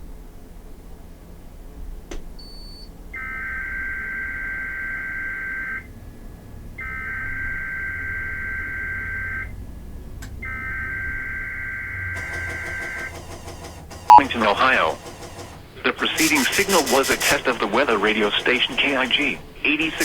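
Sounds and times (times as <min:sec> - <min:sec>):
digital data tones: 0:14.1 - 0:15.0, 0:15.9 - 0:20.0.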